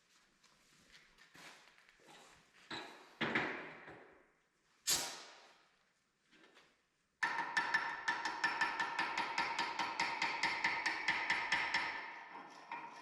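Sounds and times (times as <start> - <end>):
rapid hammer strikes on steel: 7.2 - 13.0.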